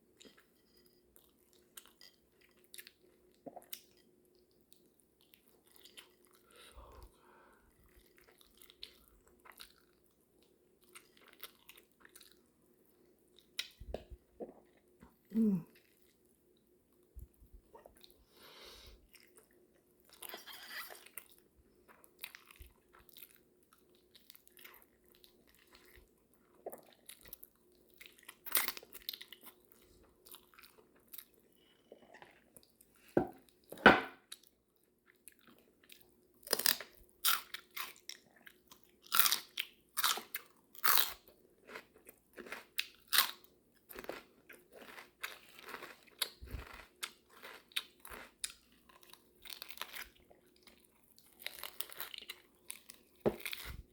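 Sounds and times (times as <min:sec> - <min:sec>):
open-mouth chewing of food: 0:00.2 - 0:12.5, 0:17.7 - 0:53.9.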